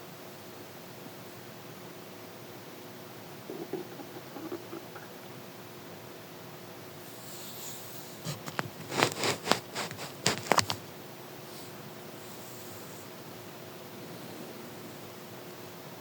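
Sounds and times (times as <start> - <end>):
faint hiss: 3.0 - 6.1
stomach gurgling pops: 3.4 - 5.3, 8.3 - 10.8.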